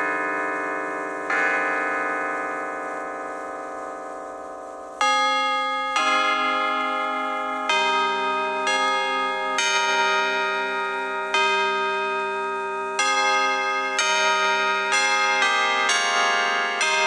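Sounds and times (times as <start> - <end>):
church bells ringing: 5.0 - 17.0.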